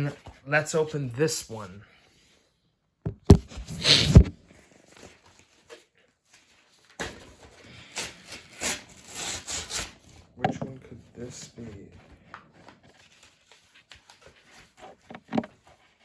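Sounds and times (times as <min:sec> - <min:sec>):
packaging rustling and crinkling: 0:04.5 - 0:16.0.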